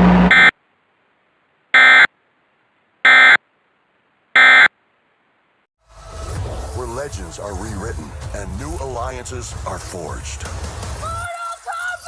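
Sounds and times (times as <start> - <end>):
digital data tone bursts: 0.0 - 0.5, 1.8 - 2.1.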